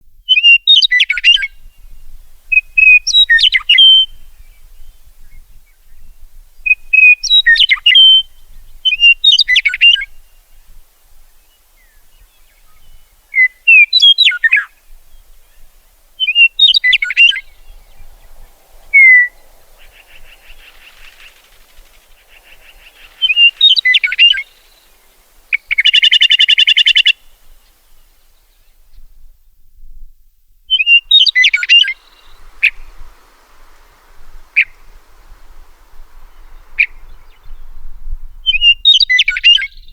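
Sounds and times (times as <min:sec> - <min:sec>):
meadowlark whistled song: 0:00.2 - 0:29.6, 0:30.7 - 0:39.9
harsh buzzy bird chatter: 0:16.2 - 0:27.2.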